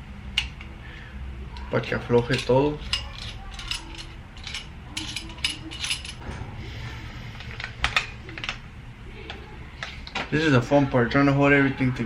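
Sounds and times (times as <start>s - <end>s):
metallic clicks and clinks: 1.6s - 6.2s.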